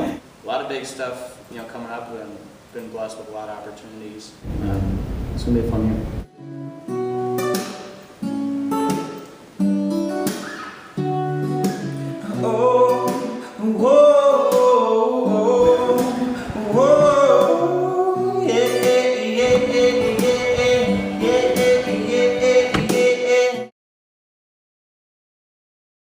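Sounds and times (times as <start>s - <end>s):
acoustic guitar strumming: 6.0s - 23.7s
person singing: 12.2s - 23.7s.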